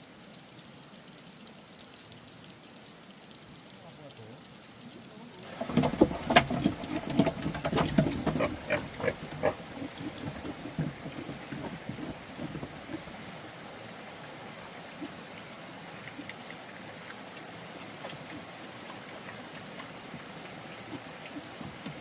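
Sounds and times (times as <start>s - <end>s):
rush of running water: 0.0s - 22.0s
low pig grunts: 6.9s - 13.0s.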